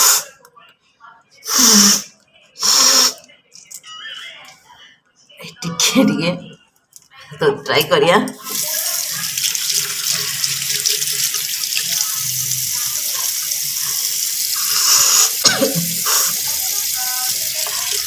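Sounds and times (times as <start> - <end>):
tap water running into sink: 8.4 - 18.0.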